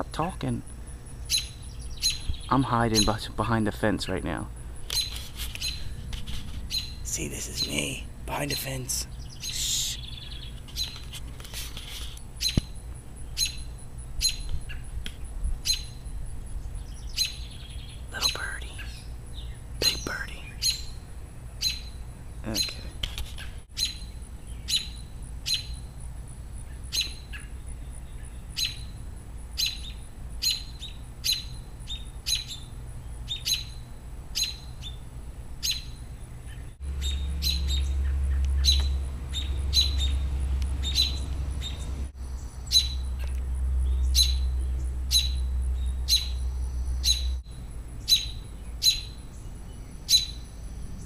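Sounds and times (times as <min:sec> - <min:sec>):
bird chirping sharply: 0:01.2 - 0:03.3, 0:06.7 - 0:08.0, 0:37.0 - 0:40.2, 0:40.8 - 0:43.1, 0:43.8 - 0:47.4, 0:48.1 - 0:49.2.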